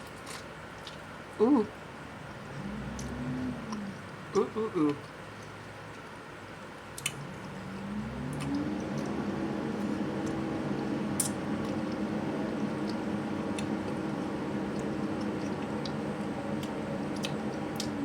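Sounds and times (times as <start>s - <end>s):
wet chewing and mouth sounds: 0.0s - 1.2s, 2.4s - 18.0s
low hum rising in pitch: 2.3s - 4.8s, 7.0s - 18.0s.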